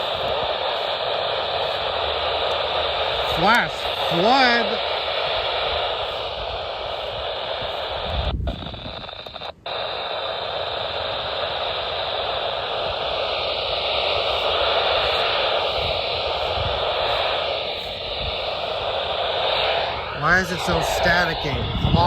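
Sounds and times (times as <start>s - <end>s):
radio static hiss: 0.0s - 22.0s.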